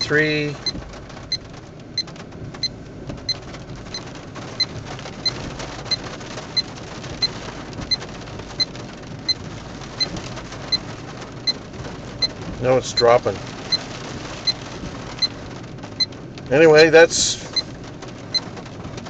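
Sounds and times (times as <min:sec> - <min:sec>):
diesel engine idling: 0:00.0 - 0:07.8.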